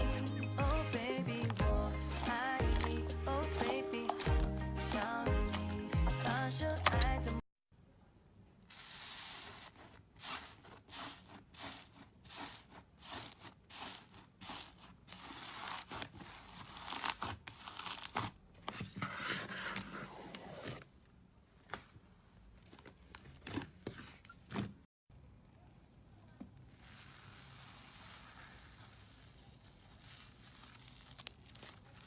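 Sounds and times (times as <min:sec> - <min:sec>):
slime squelching by hand: 0:26.8 - 0:32.0.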